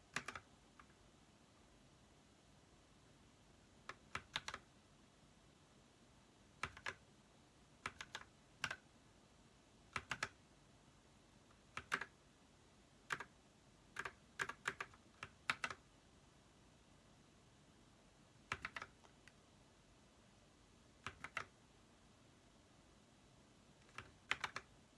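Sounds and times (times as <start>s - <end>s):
mechanical keyboard clacks: 0.1s - 0.9s, 3.9s - 4.6s, 6.6s - 7.0s, 7.8s - 8.8s, 9.9s - 10.4s, 11.8s - 12.1s, 13.1s - 13.3s, 14.0s - 15.8s, 18.5s - 19.1s, 21.0s - 21.5s, 23.8s - 24.7s.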